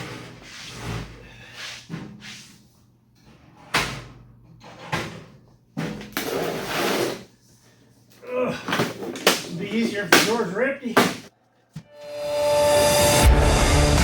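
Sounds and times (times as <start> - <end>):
tool box bangs and slams: 11.0 - 11.3.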